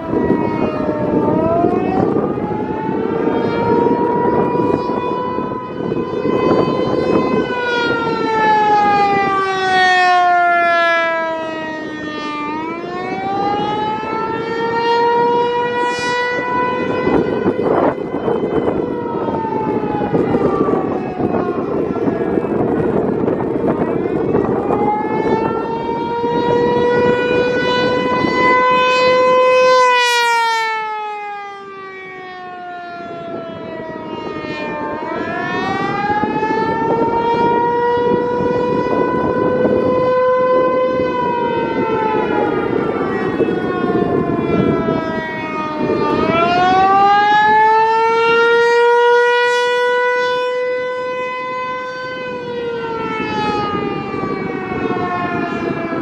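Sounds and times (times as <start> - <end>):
warning siren rising and falling: 0.0 - 56.0.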